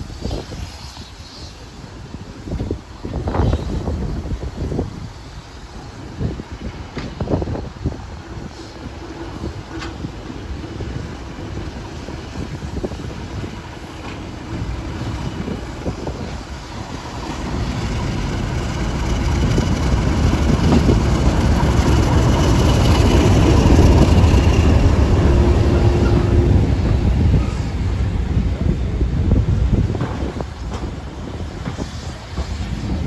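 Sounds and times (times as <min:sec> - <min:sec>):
train rumbling past: 0:00.0 - 0:33.0.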